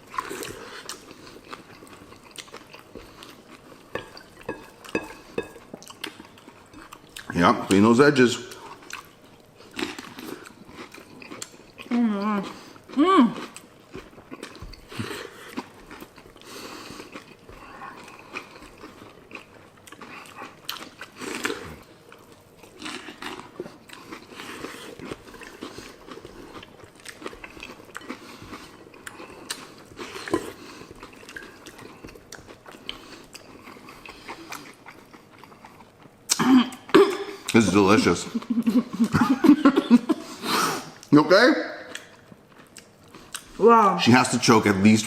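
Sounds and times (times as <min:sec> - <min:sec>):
people crunching cereal: 0:08.5 - 0:39.2.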